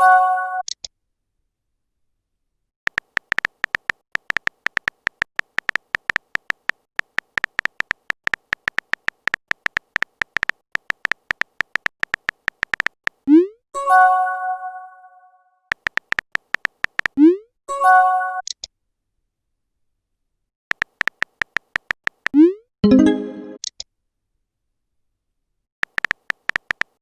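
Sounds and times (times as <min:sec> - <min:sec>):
phone keyboard typing clicks: 0:02.9 - 0:13.2, 0:15.7 - 0:17.2, 0:20.7 - 0:22.4, 0:25.8 - 0:27.0
bright message chime: 0:22.8 - 0:23.6.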